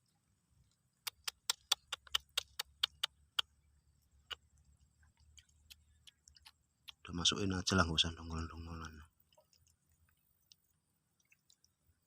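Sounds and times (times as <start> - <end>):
sharp clicks: 1.0 - 3.5.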